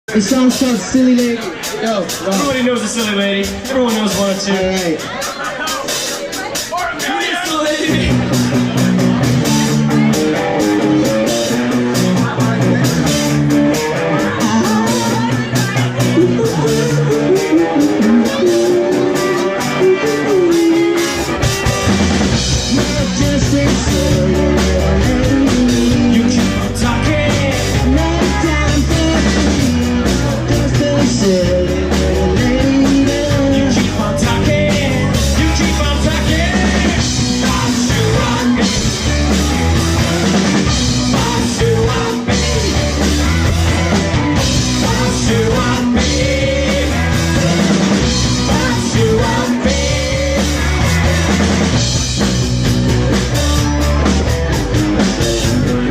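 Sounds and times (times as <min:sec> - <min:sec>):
drum kit: 0:00.1 - 0:55.9
bass guitar: 0:07.6 - 0:55.9
electric guitar: 0:07.9 - 0:55.9
person singing: 0:13.7 - 0:21.8, 0:22.6 - 0:51.5.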